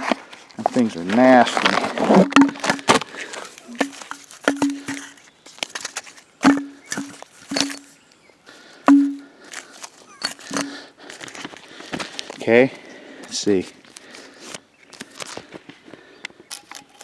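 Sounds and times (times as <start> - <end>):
fireworks tubes knocking and clacking: 2.2 - 5.2, 6.4 - 8.0, 8.9 - 9.3, 10.2 - 10.8.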